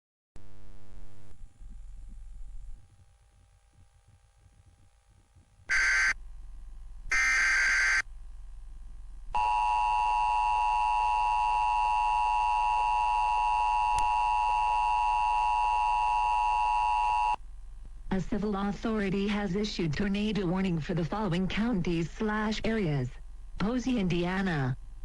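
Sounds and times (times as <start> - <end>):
digital data tone bursts: 5.7 - 6.2, 7.1 - 8.0
harsh dual-tone alert signal: 5.7 - 6.2, 7.1 - 8.0.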